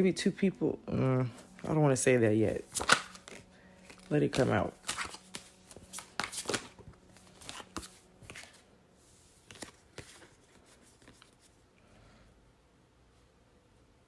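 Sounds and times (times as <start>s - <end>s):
faint rustling of cards: 1.2s - 11.7s
cards being shuffled: 2.4s - 8.6s, 9.2s - 11.5s
card snaps and clicks: 2.7s - 6.8s.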